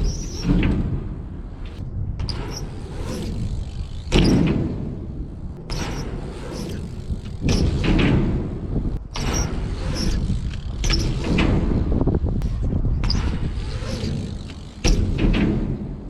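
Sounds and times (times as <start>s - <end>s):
wheels rolling over skate ramps: 0.0s - 16.0s
wind buffeting microphone: 0.0s - 16.0s.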